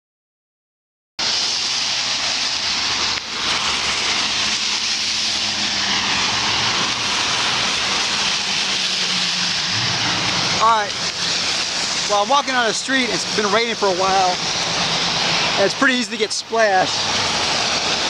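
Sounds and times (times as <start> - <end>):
tyres hissing on wet street: 1.2 - 18.0
low engine hum: 1.6 - 15.8.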